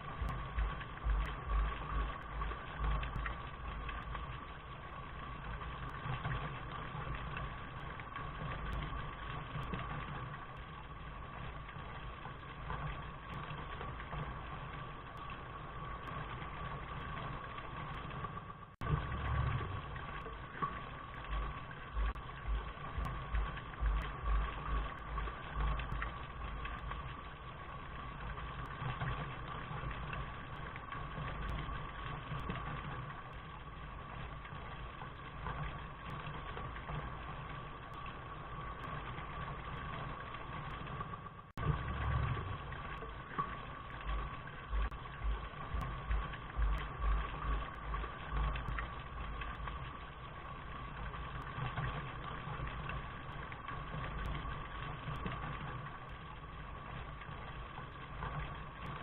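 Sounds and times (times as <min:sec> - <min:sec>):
low rumble: 0:00.0 - 0:16.6, 0:18.0 - 0:37.3, 0:37.9 - 0:53.0.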